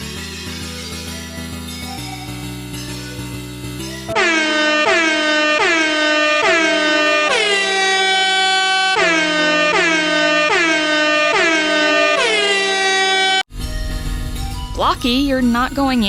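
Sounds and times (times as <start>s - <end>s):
air horn blasts: 4.1s - 13.5s.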